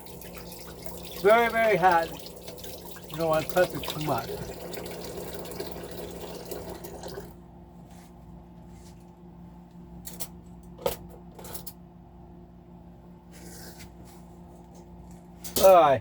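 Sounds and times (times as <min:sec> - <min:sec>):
tap water running: 0:00.0 - 0:07.4.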